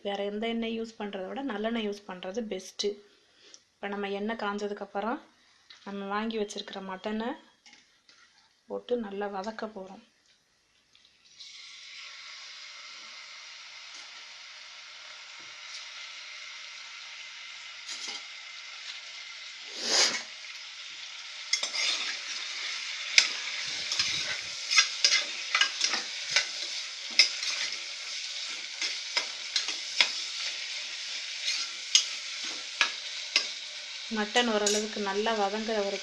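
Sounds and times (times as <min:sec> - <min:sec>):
meat sizzling in oil: 0:11.1 - 0:36.0.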